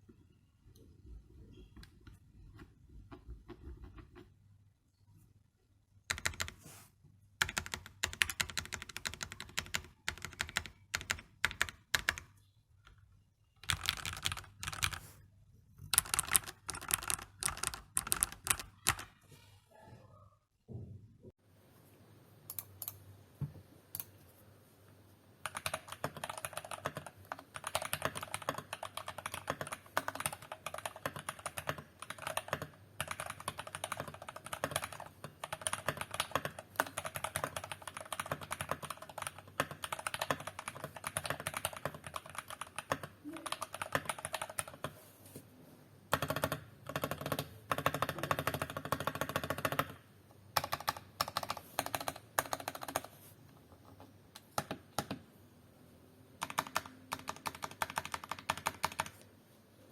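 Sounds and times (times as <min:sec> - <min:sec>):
mechanical keyboard typing: 0:06.0 - 0:06.6, 0:07.4 - 0:12.4, 0:13.6 - 0:15.0, 0:15.8 - 0:19.1, 0:25.4 - 0:45.0, 0:46.1 - 0:53.2, 0:54.4 - 0:55.2, 0:56.4 - 0:59.2.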